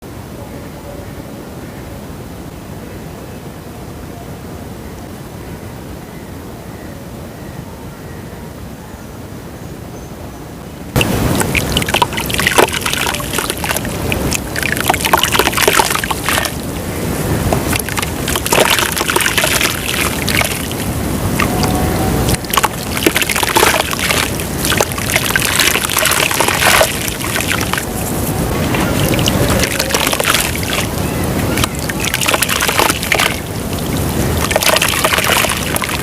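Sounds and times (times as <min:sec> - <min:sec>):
dirt crumbling into water: 0:11.0 - 0:16.6, 0:17.5 - 0:21.6, 0:22.3 - 0:27.9, 0:28.6 - 0:36.0
water sloshing with crackles: 0:11.0 - 0:36.0.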